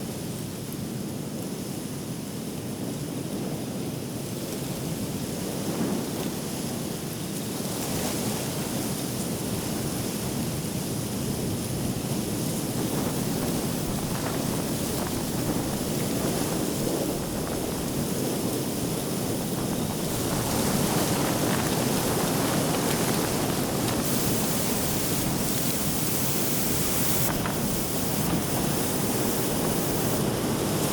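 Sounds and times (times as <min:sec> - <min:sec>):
gusty wind buffeting microphone: 0:11.2 - 0:30.9.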